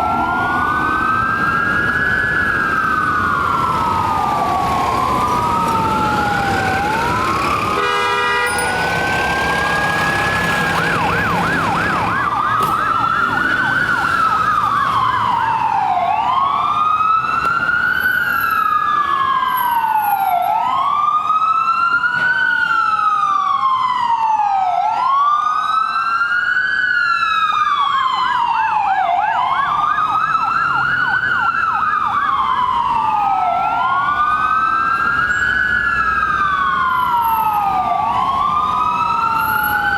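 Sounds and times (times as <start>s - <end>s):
ambulance siren wailing: 0.0s - 39.9s
siren yelp warble: 8.4s - 16.7s.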